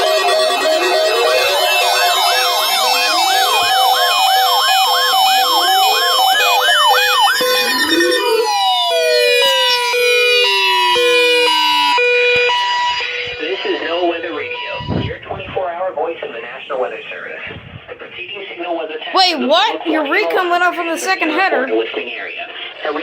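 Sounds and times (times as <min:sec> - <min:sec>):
two-tone high-low siren: 0:00.0 - 0:15.5
sirens yelping and wailing: 0:00.0 - 0:21.5.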